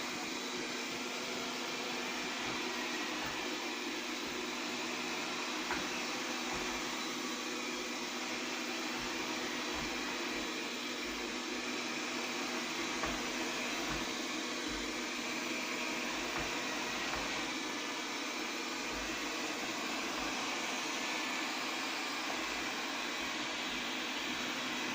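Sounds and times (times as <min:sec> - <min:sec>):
robot vacuum whirring: 0:00.0 - 0:24.9.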